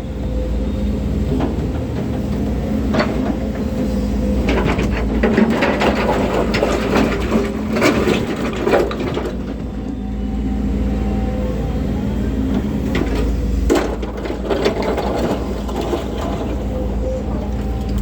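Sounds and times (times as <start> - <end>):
diesel engine running: 0.0 - 18.0
bucket crunching and scraping: 13.1 - 18.0.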